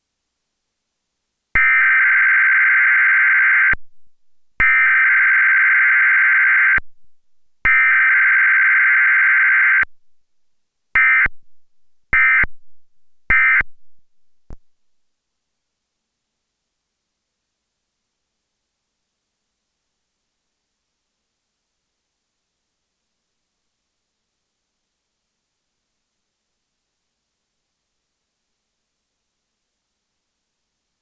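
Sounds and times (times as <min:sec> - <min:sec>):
emergency alert data bursts: 0:01.6 - 0:03.8, 0:04.6 - 0:06.8, 0:07.7 - 0:09.8, 0:11.0 - 0:11.3, 0:12.2 - 0:12.5, 0:13.3 - 0:13.6.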